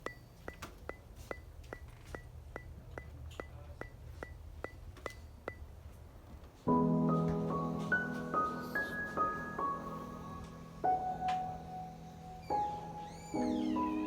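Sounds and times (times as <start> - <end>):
mechanical ticking with ping: 0.0 - 5.8.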